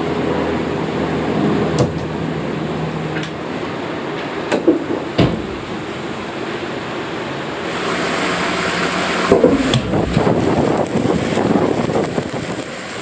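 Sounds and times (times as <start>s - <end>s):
steady hum: 0.4s - 12.4s
rushing noise: 2.2s - 13.0s
knocks and thuds of slide capsule: 4.5s - 5.9s, 9.3s - 10.7s.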